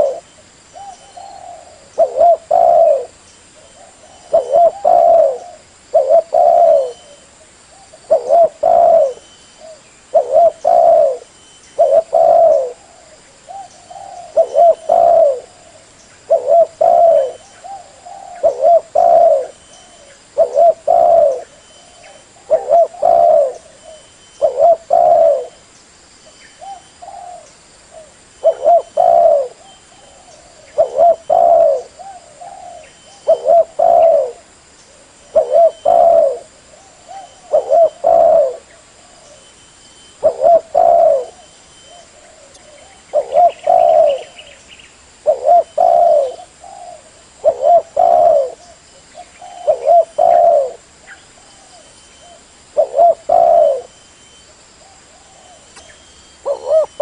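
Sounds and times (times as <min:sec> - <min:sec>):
dove cooing: 0:00.0 - 0:25.6, 0:26.6 - 0:44.6, 0:45.2 - 0:57.0.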